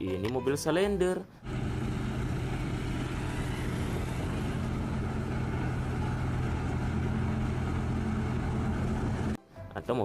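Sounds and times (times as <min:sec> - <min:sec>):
heavy vehicle engine running: 0:01.4 - 0:09.4.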